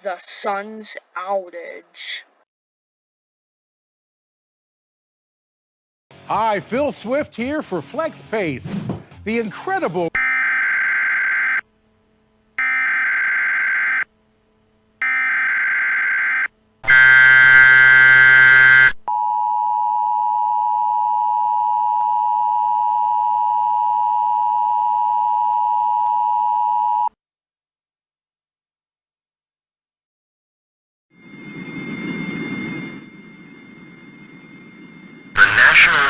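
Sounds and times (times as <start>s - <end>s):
harsh buzzing tone: 10.2s - 11.6s, 12.5s - 14.1s, 15.0s - 19.1s, 35.4s - 36.0s
steady two-tone alert signal: 10.2s - 11.6s, 12.6s - 14.0s, 15.0s - 19.0s.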